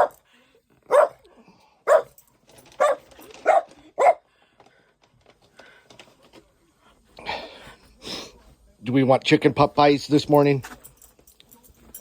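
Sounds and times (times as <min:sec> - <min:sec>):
dog barking: 0:00.0 - 0:00.2, 0:00.9 - 0:04.3.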